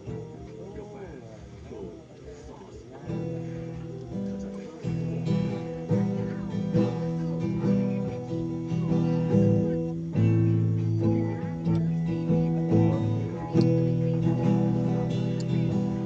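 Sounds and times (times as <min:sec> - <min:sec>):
acoustic guitar strumming chords: 0:00.0 - 0:16.0.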